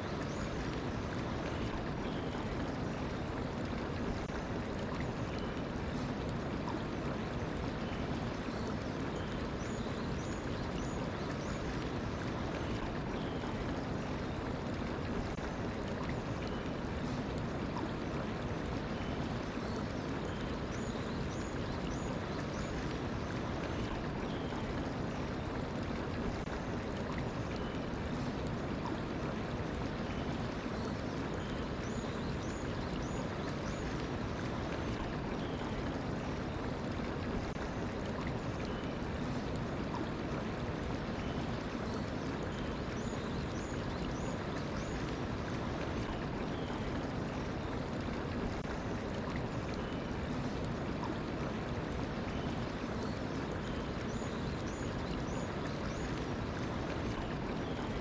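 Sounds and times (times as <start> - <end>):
stream flowing: 0.0 - 58.0.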